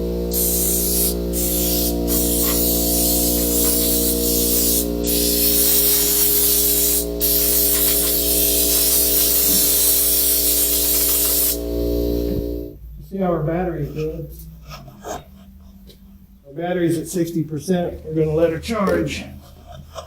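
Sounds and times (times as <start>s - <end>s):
air blower hissing: 0.0s - 12.8s
low hum: 0.0s - 17.0s.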